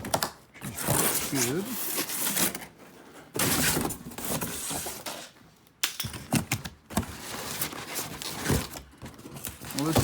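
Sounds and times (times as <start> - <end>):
cardboard box scraping and rustling: 0.8 - 5.3, 7.0 - 10.0.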